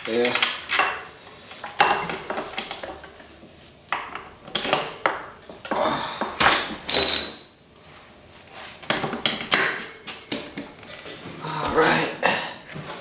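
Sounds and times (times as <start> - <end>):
metal parts clinking and scraping: 6.9 - 7.5.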